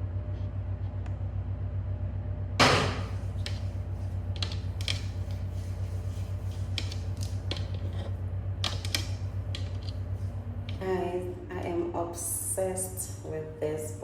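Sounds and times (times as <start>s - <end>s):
steady low hum: 0.0s - 14.0s
light clicks and taps: 4.3s - 5.4s.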